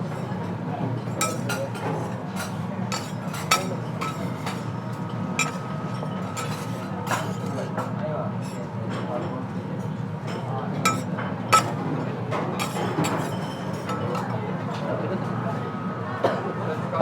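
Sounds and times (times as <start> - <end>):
low background hum: 0.0 - 16.2
dishes and cutlery clinking: 1.0 - 9.4, 10.3 - 14.4.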